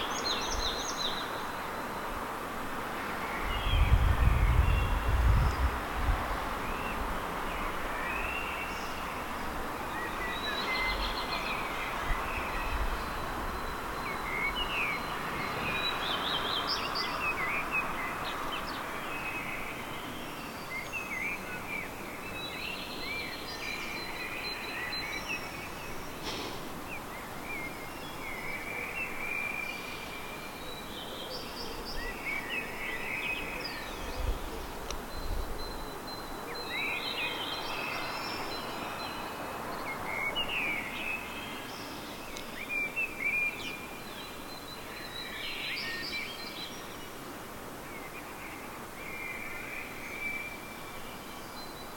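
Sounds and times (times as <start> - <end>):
songbirds chirping and warbling: 0.0 - 51.9
steady background noise: 0.0 - 51.9.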